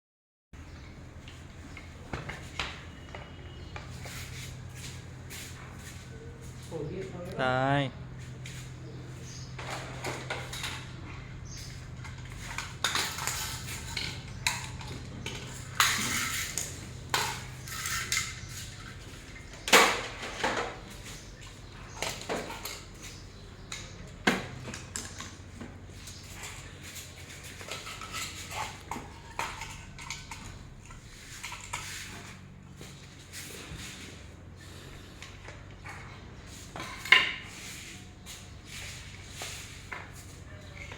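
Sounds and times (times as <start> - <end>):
hard objects clinking and knocking: 12.0 - 20.8.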